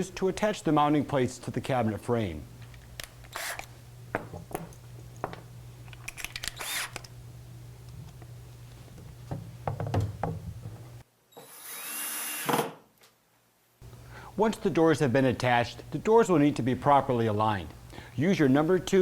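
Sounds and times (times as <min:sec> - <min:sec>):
screws and hardware clicking: 0:02.7 - 0:03.7, 0:04.7 - 0:07.1
electric drill whining: 0:03.3 - 0:03.7, 0:06.4 - 0:07.1, 0:11.4 - 0:12.6.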